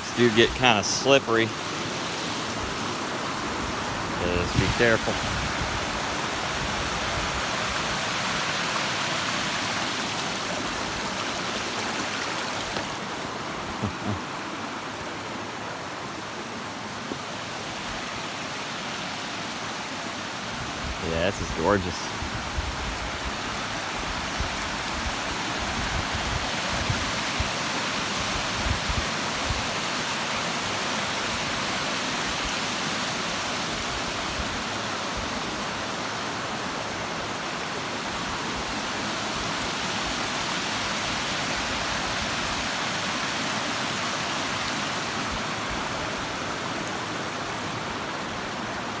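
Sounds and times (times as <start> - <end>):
water spilling over a dam: 4.1 - 14.0, 23.0 - 49.0.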